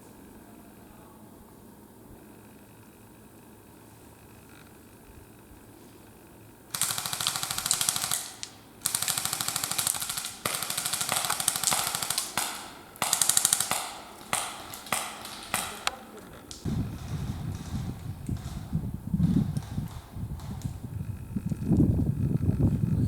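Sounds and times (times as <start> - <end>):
airsoft guns firing bursts: 6.7 - 20.9.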